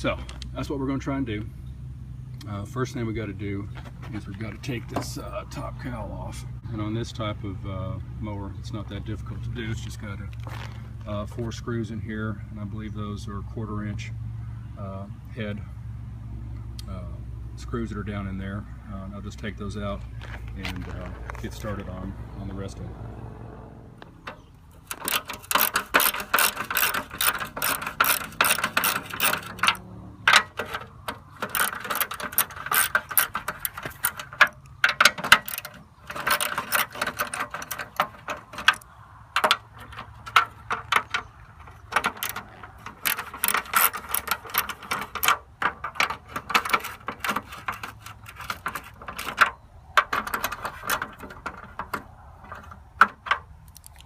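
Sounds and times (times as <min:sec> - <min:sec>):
socket ratchet clicking: 0:24.8 - 0:53.4.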